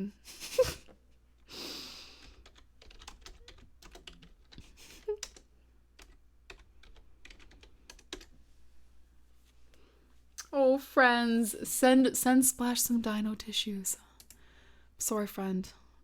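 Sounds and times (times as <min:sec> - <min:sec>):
faint keyboard typing: 0:01.9 - 0:08.4, 0:14.1 - 0:14.4.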